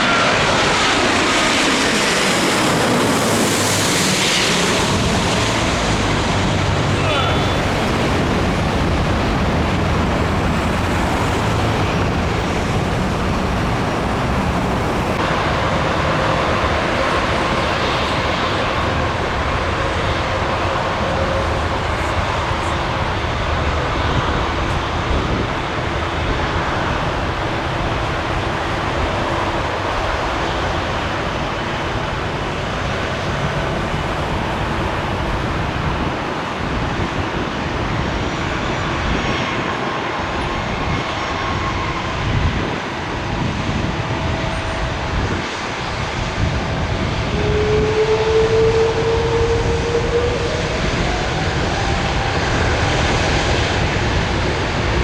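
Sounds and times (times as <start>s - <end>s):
jet engines roaring: 0.0s - 55.0s
rising whine: 46.4s - 53.9s.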